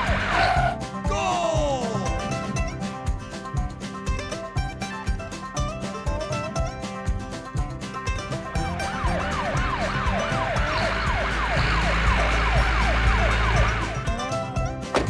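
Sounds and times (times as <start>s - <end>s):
emergency vehicle siren: 0.0s - 0.7s, 8.6s - 14.2s
music: 0.0s - 15.0s.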